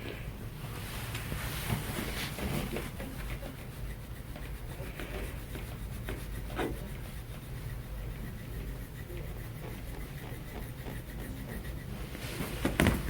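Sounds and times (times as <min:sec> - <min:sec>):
metal tool scraping skin: 0:02.6 - 0:13.0.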